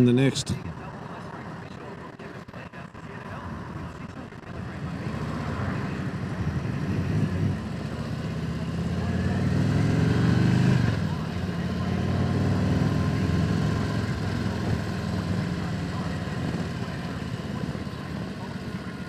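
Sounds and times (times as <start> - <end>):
motorcycle engine running: 5.0 - 19.0.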